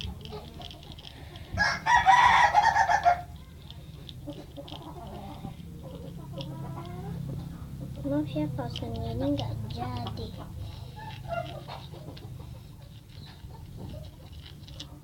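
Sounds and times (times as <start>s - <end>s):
rooster crowing: 1.6s - 3.4s.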